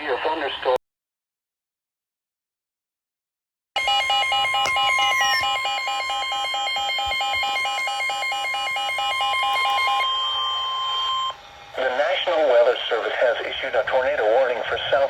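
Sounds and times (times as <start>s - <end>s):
harsh alarm beeping: 3.8s - 11.8s
high steady warning tone: 3.8s - 12.1s.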